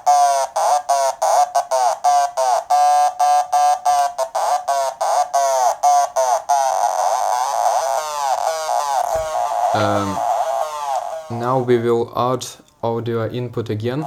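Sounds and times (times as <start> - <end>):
short buzzy synth notes: 9.1 - 11.9.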